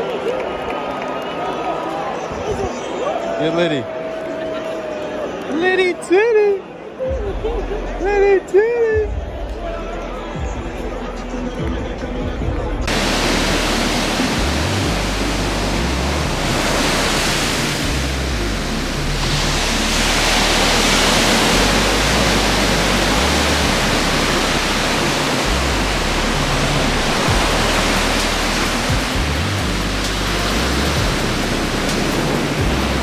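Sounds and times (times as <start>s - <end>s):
waves breaking: 12.8s - 33.0s.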